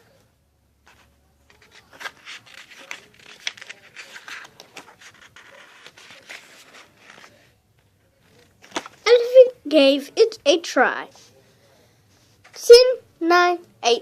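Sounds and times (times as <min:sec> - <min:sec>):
rustling and scraping handling noise: 0:00.8 - 0:09.5, 0:12.0 - 0:12.7.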